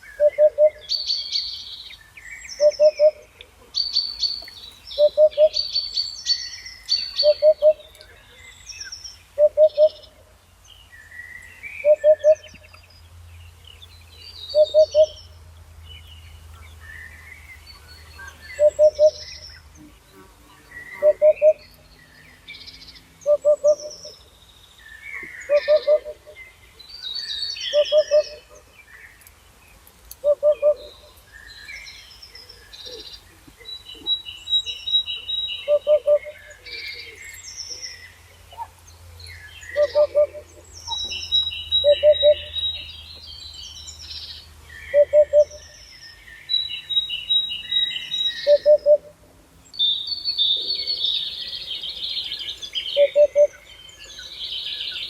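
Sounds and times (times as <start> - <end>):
low hooting bird call: 0.0 - 1.5, 2.5 - 8.5, 9.4 - 10.3, 11.7 - 12.6, 14.5 - 15.4, 17.8 - 20.0, 20.7 - 21.8, 23.2 - 24.3, 25.1 - 26.6, 27.2 - 28.7, 30.2 - 31.2, 33.9 - 37.8, 39.6 - 43.0, 44.8 - 45.8, 46.8 - 49.2, 49.8 - 55.0
songbirds chirping and whistling: 0.0 - 55.0.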